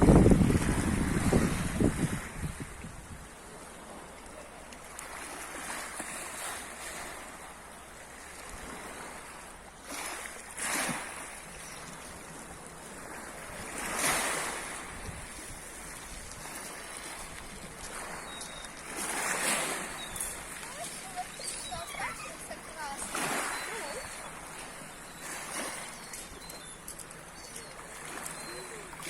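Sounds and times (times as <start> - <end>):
sea waves washing ashore: 0.0 - 29.0.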